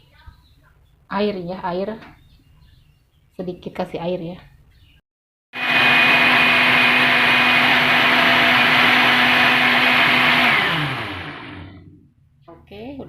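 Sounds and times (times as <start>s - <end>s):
blender motor whining: 5.6s - 11.8s.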